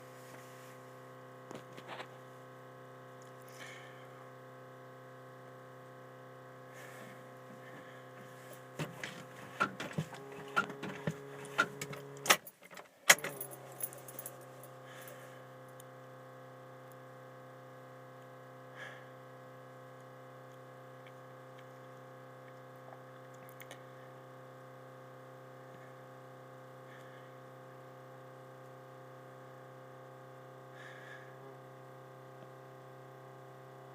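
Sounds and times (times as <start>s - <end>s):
faint steady hum: 0.0s - 33.9s
keys jangling in ignition: 11.4s - 14.6s.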